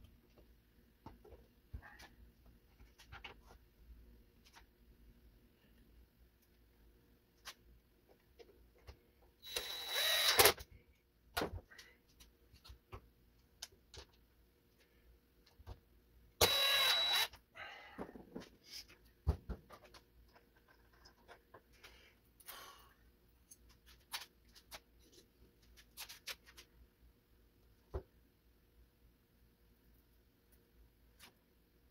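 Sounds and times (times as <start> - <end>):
small electric motor whining: 9.4 - 10.6, 16.4 - 17.3.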